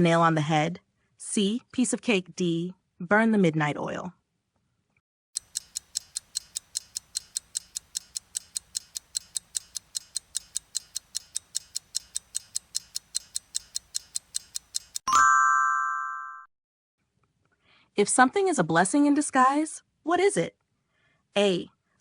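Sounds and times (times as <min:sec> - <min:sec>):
clock ticking: 0:05.4 - 0:15.1.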